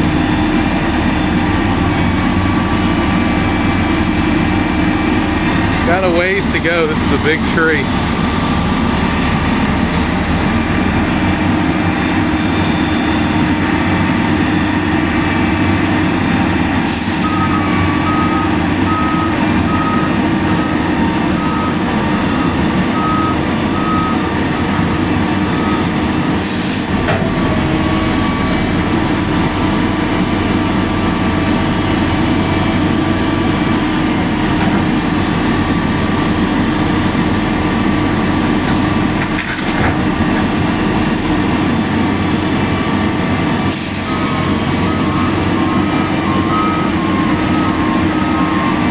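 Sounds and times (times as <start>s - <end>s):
heavy machine engine running: 0.0s - 48.9s
back-up alarm beeping: 17.2s - 26.0s, 44.0s - 48.9s.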